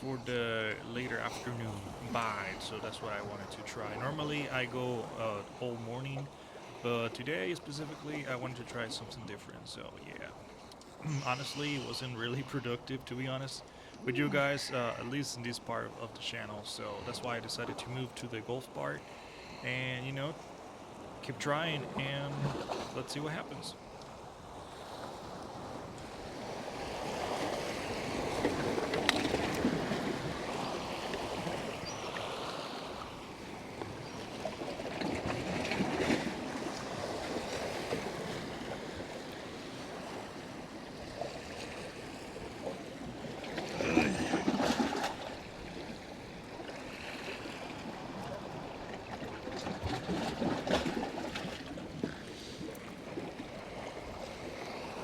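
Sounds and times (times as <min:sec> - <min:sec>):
surf washing against rocks: 0:00.0 - 0:23.8, 0:24.4 - 0:55.0.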